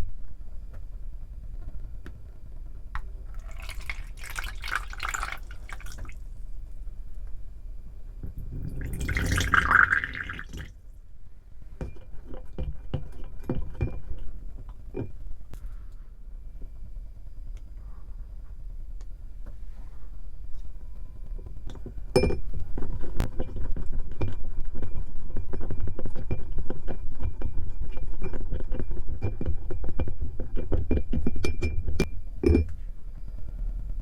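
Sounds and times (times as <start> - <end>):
water pouring into container: 3.4 - 6.4, 8.3 - 10.7.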